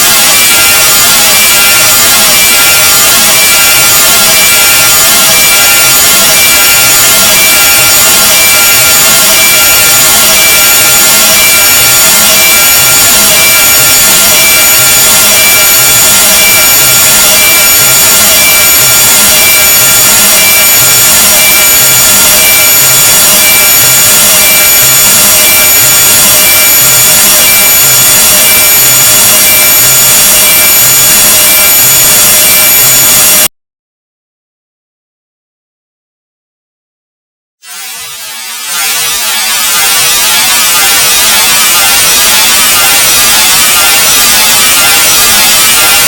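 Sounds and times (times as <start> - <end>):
piercing high tones: 0.0 - 33.5, 37.7 - 46.0
harsh grating rasping hiss: 37.7 - 46.0.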